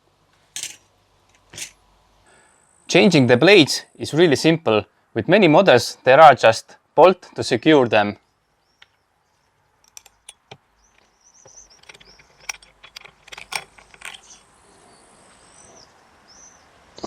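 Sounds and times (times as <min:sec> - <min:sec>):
metal clicks and rattles: 0:00.6 - 0:01.8, 0:09.8 - 0:14.5.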